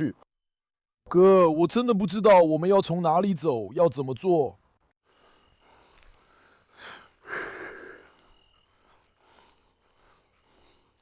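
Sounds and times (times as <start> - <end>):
person breathing: 5.0 - 11.0.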